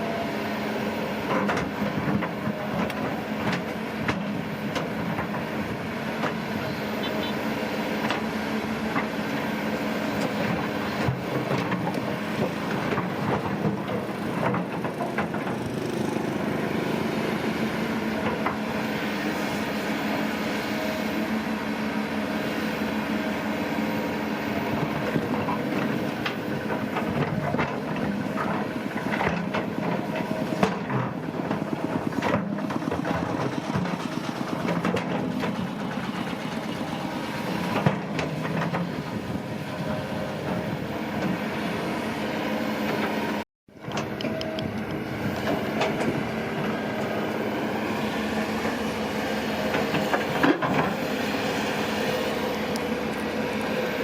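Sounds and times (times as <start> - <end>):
diesel engine running: 0.0 - 54.0
machinery clanks and knocks: 10.2 - 16.6, 24.7 - 41.5, 43.8 - 47.4, 48.0 - 54.0.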